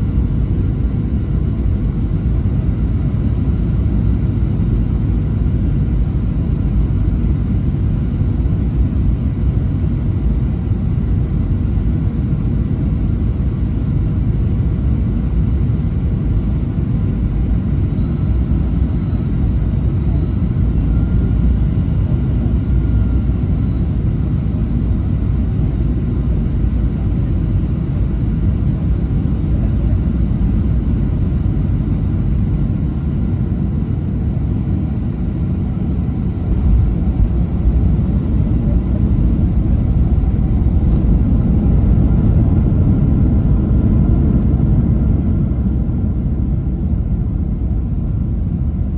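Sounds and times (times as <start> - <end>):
airplane engine rumble: 0.0 - 48.9
faint high whining tones: 16.4 - 43.6.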